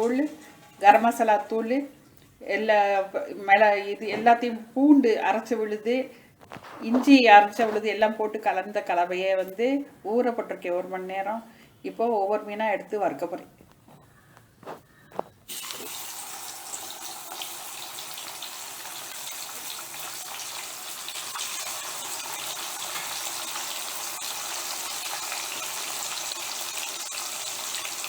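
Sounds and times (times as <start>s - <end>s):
fish sizzling in hot oil: 15.5s - 28.0s.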